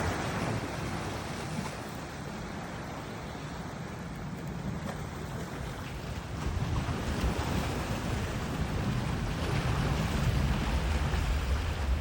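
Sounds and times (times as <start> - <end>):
surf washing: 0.0 - 12.0
wind rumbling on microphone: 0.0 - 12.0.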